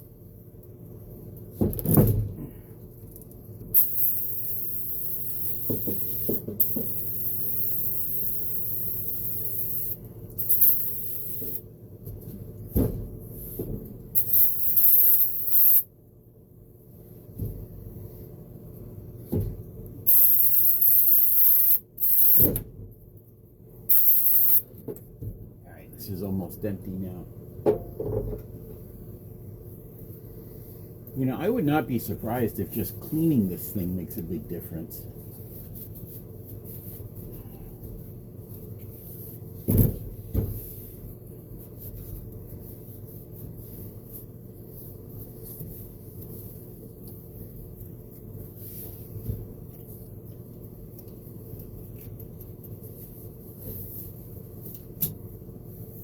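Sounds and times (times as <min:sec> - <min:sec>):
vent fan humming: 0:00.0 - 0:56.0
aerosol spray hissing: 0:20.1 - 0:22.4, 0:23.9 - 0:24.6.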